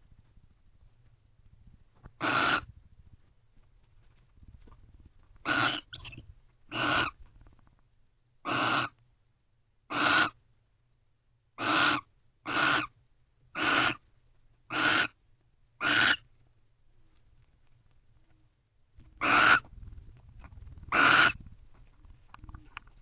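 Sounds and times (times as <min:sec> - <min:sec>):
owl harsh hissing calls: 0:02.2 - 0:02.7, 0:05.4 - 0:07.2, 0:08.5 - 0:09.0, 0:09.9 - 0:10.4, 0:11.6 - 0:12.9, 0:13.6 - 0:14.0, 0:14.7 - 0:15.2, 0:15.8 - 0:16.2, 0:19.2 - 0:19.6, 0:20.9 - 0:21.4.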